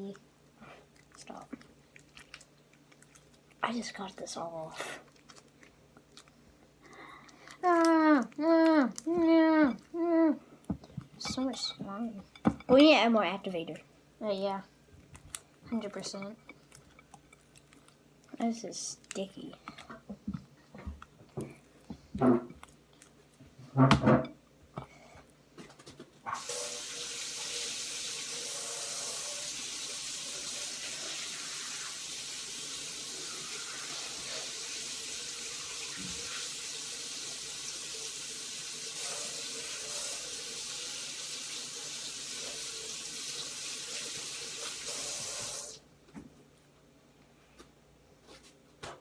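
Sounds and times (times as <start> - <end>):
water tap running into sink: 26.3 - 45.8.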